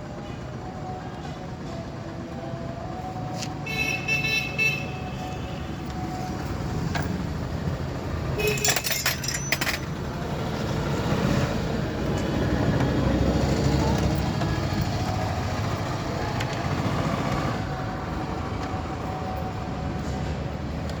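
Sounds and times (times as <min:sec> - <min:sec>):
traffic rumble: 0:00.0 - 0:21.0
vehicle horns honking: 0:03.6 - 0:05.8, 0:08.4 - 0:09.0.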